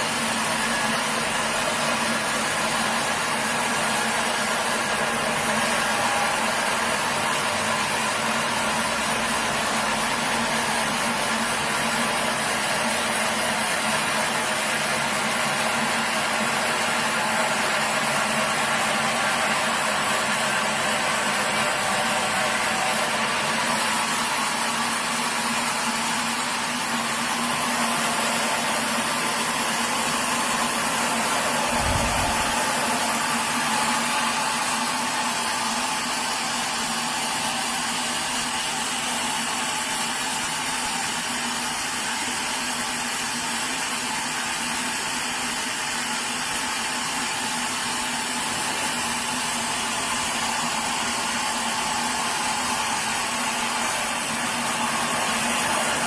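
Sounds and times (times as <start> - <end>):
machine hum: 0.0 - 42.5, 46.5 - 56.0.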